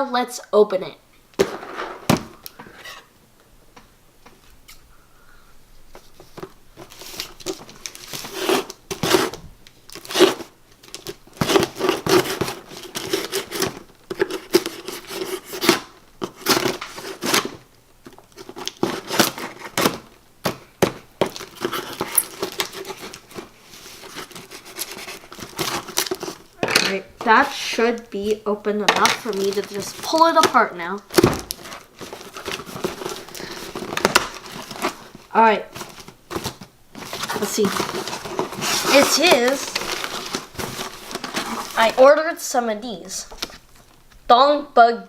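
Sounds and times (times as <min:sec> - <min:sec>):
packing tape ripping: 0:06.8 - 0:20.6, 0:21.2 - 0:26.9, 0:29.0 - 0:35.2, 0:35.8 - 0:42.0.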